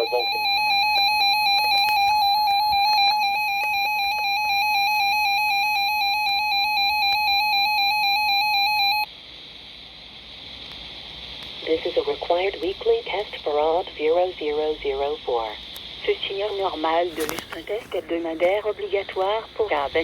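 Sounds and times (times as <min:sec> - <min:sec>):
warbling emergency alert tone: 0:00.0 - 0:09.1
low radio hiss: 0:00.0 - 0:20.0.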